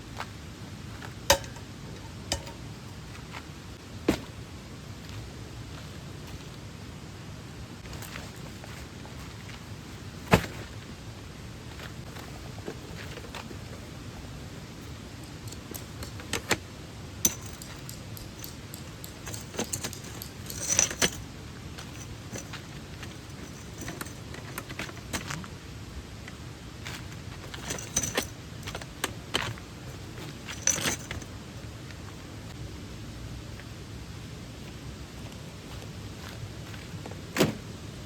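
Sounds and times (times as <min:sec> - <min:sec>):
small metal items clinking: 0:01.3 - 0:03.1, 0:15.2 - 0:16.6, 0:17.2 - 0:25.5, 0:26.9 - 0:31.4.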